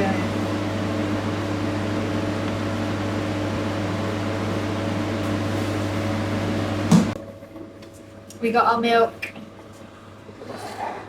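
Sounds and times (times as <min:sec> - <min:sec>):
vending machine humming: 0:00.0 - 0:11.0
machine shutting off clunk: 0:06.8 - 0:07.2.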